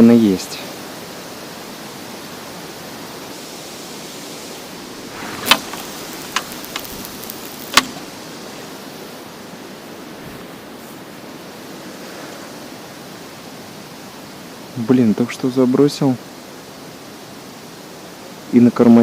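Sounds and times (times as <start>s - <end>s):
wind rushing over microphone: 2.1s - 12.8s
sharp clicks or knocks: 5.2s - 8.0s.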